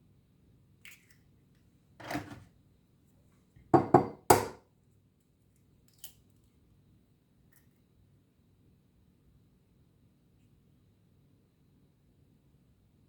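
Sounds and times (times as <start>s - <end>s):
kitchenware scraping: 2.0s - 2.4s
kitchenware knocking: 3.8s - 4.6s.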